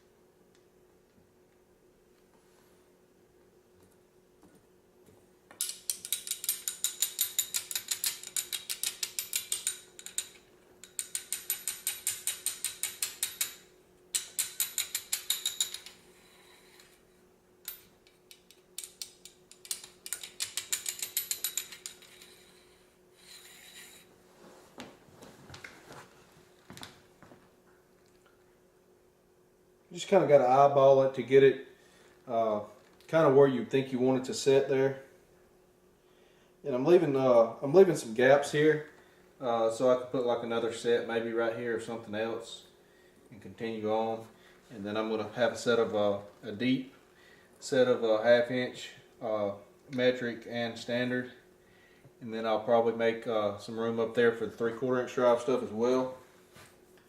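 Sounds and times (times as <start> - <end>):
hand ratchet clicking: 5.6 - 15.9, 17.6 - 22.5.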